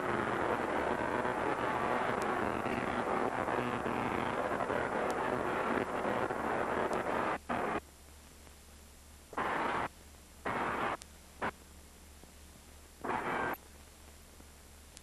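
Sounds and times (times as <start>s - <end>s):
tesla coil crackling discharge: 0.0s - 7.8s, 9.4s - 11.5s, 13.0s - 13.6s
low hum: 0.0s - 15.0s.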